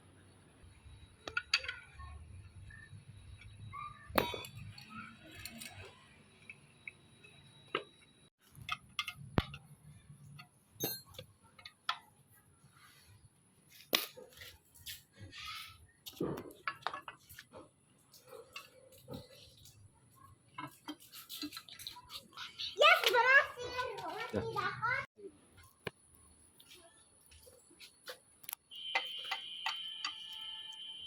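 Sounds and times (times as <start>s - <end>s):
metal parts clinking and knocking: 3.2s - 12.1s.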